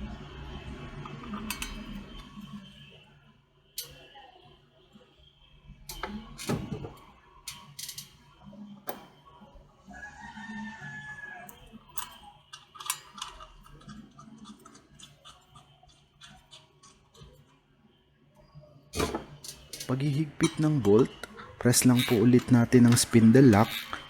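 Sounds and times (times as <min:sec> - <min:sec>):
rooster crowing: 0:09.8 - 0:11.9.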